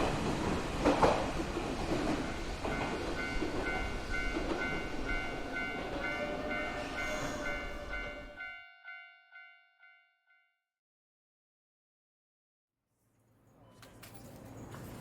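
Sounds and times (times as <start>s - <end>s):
train rumbling on rails: 0.0s - 8.5s
level-crossing bell ringing: 2.7s - 10.5s.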